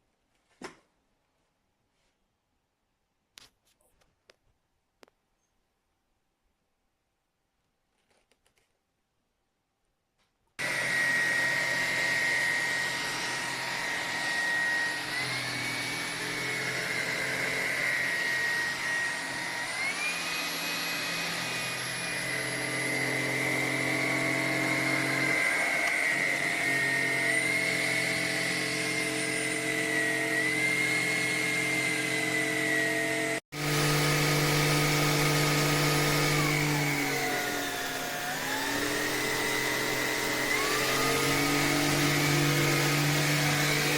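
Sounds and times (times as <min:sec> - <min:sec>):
stick vacuum cleaner whine: 0:10.6 - 0:43.9.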